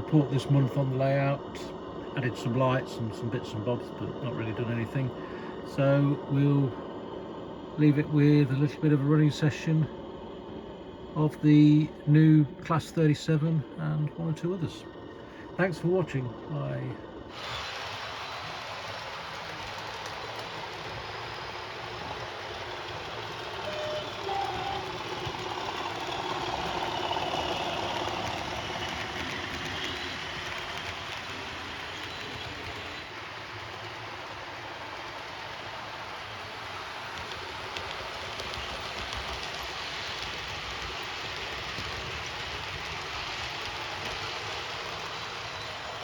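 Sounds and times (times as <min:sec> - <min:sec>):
diesel engine sound from speaker: 0:00.0 - 0:06.8
model train rolling on track: 0:00.0 - 0:46.0.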